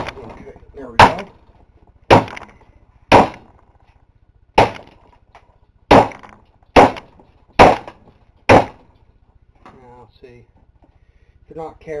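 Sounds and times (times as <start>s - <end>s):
heavy blows smashing sheet metal: 0.9s - 1.4s, 2.1s - 2.5s, 5.9s - 8.9s.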